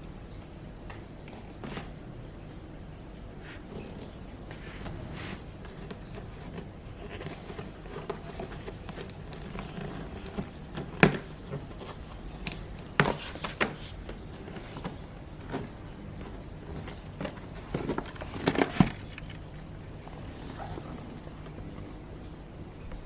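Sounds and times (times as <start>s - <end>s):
bag handling clicks and knocks: 4.8s - 21.6s.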